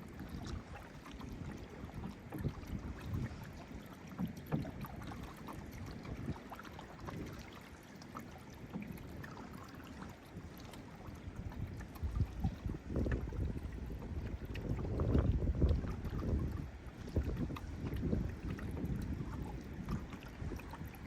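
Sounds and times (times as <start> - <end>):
paddle dips: 0.0 - 21.0
water splashing against hull: 0.0 - 21.0
wind gusting on microphone: 11.7 - 21.0.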